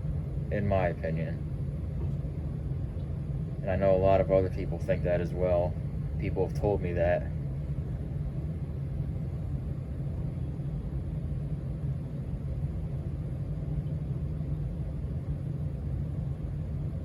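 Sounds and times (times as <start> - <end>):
ceiling fan rumbling: 0.0 - 17.0.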